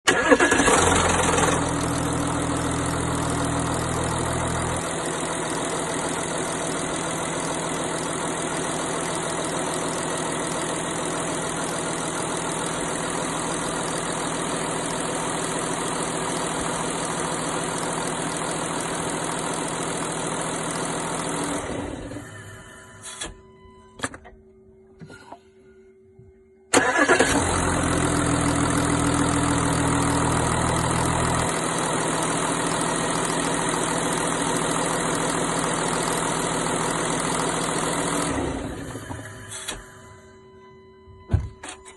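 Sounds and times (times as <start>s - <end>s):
engine rattle: 0.1s - 8.4s, 26.8s - 39.3s
car engine idling: 0.1s - 21.7s, 26.8s - 38.8s.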